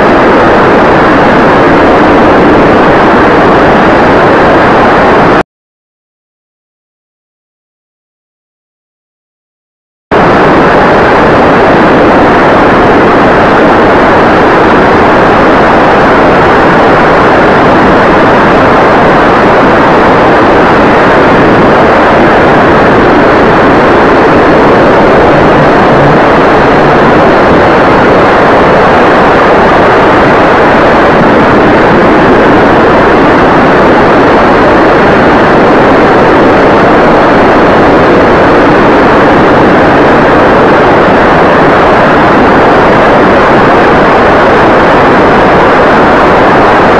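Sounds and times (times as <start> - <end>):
propeller and wind rush: 0.0 - 5.4, 10.1 - 46.9
faint high motor whine: 10.2 - 46.9.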